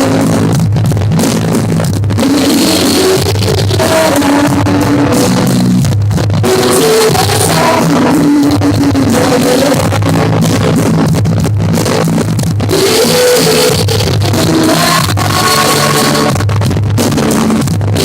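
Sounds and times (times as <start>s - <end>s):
guitar: 0.0s - 18.0s
person singing: 2.2s - 5.8s, 6.4s - 11.1s, 12.7s - 16.7s.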